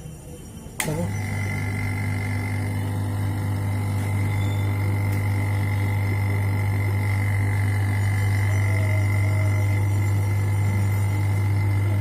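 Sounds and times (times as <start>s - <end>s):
vacuum pump humming: 0.1s - 12.0s.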